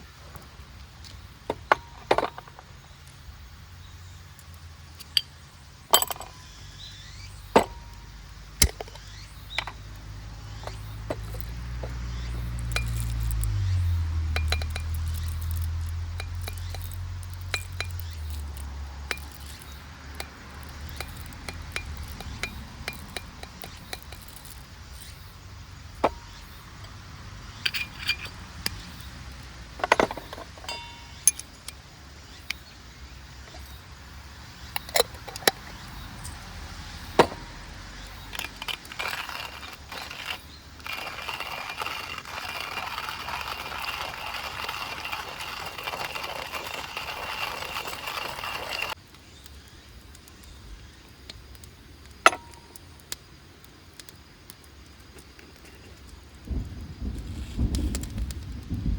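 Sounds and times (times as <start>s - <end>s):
cookware clinking: 29.9s - 31.5s.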